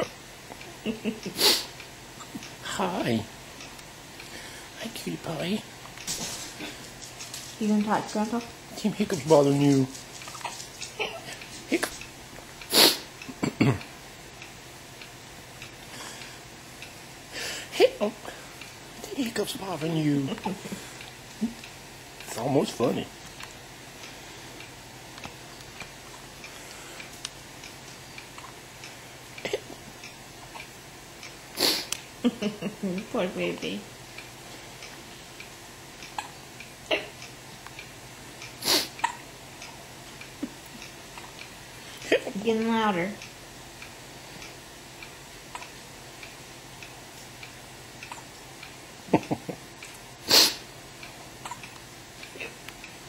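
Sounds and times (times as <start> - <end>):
low room hum: 0.0 - 53.0
baby hiccuping: 39.0 - 39.2.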